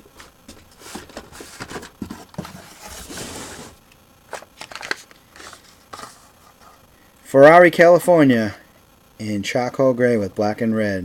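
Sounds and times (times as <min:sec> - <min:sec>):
blister packs rustling and scraping: 0:00.0 - 0:06.8.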